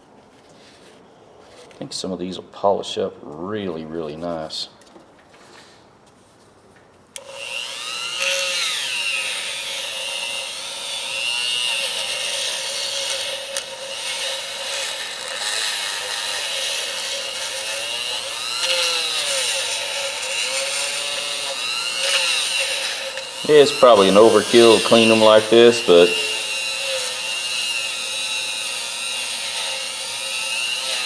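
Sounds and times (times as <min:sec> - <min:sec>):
small electric power tool whining: 0:07.2 - 0:31.0.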